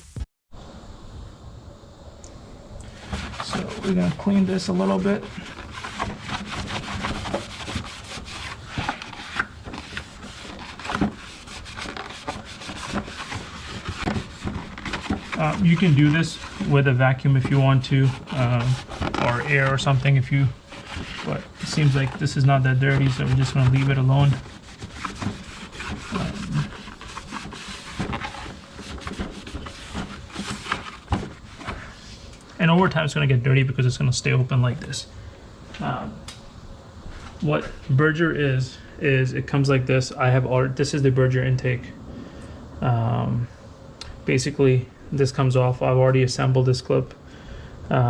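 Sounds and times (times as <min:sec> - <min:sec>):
hand rubbing and scraping: 0:02.8 - 0:32.4.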